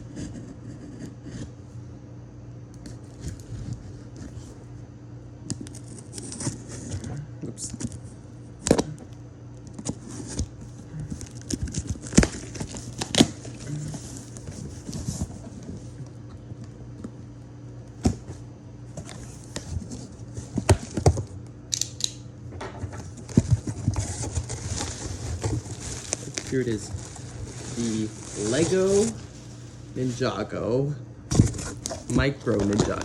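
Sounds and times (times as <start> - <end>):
packing material tearing and crinkling: 9.7 - 15.8, 23.1 - 30.5, 31.3 - 33.0.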